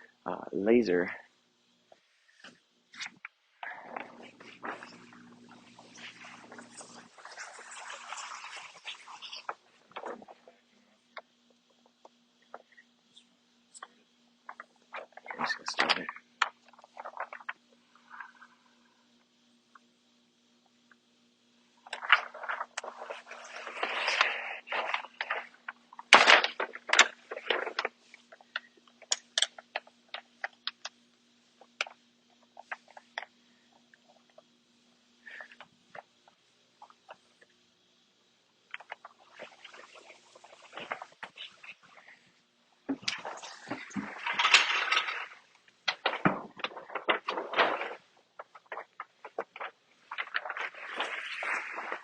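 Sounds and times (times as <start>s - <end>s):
paper backing crinkling: 2.3s - 10.8s, 13.8s - 18.5s, 21.8s - 30.8s, 31.6s - 34.4s, 38.7s - 52.0s
adhesive crackles and pops: 21.9s - 31.0s, 38.7s - 42.2s, 42.9s - 52.0s.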